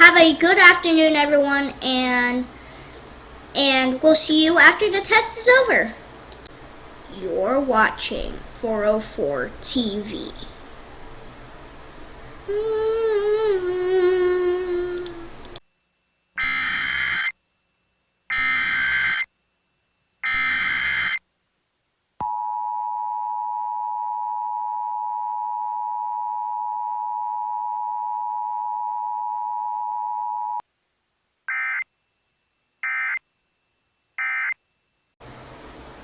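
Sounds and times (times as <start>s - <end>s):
digital header data bursts: 16.4s - 17.3s, 18.3s - 19.3s, 20.2s - 21.2s
two-tone attention signal: 16.4s - 17.3s, 18.3s - 19.3s, 20.2s - 21.2s.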